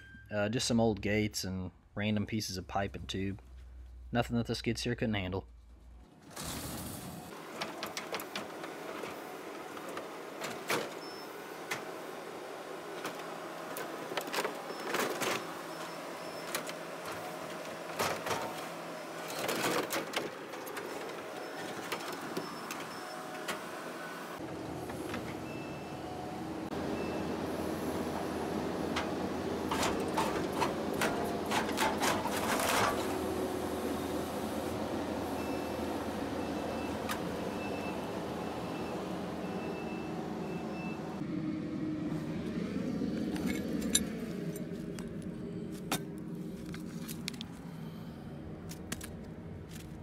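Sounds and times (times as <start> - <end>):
skid steer engine running: 20.4 - 47.5.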